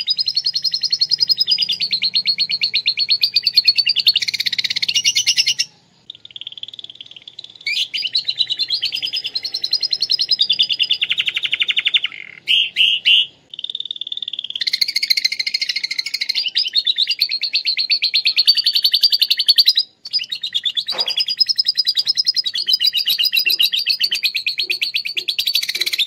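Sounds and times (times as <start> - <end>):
canary singing trills: 0.0 - 26.0.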